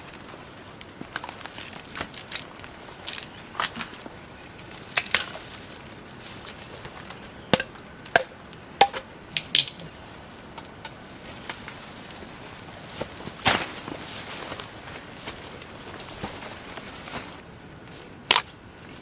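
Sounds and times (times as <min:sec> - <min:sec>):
bamboo shoots cracking: 0:04.6 - 0:05.4, 0:06.4 - 0:10.0, 0:18.3 - 0:18.6.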